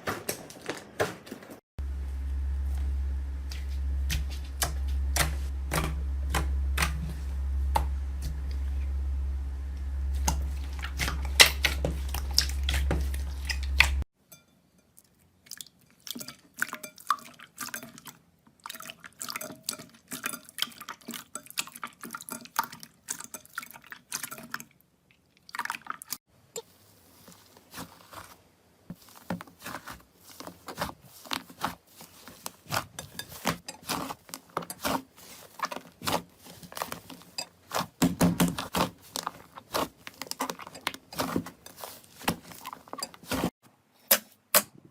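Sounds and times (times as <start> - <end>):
low steady hum: 1.8 - 14.1
slime squelching by hand: 1.8 - 14.1, 15.4 - 43.6.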